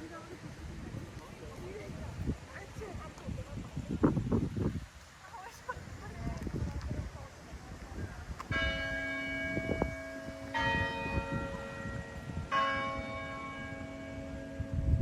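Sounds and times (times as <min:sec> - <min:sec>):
tower chime bells ringing: 0:08.6 - 0:14.7.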